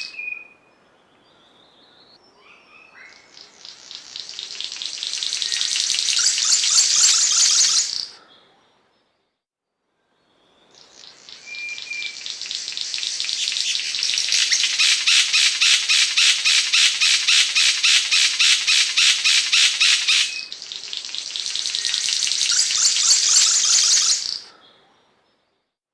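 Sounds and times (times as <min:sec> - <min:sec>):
bird buzzy rattling song: 0:03.3 - 0:08.1, 0:10.7 - 0:24.4.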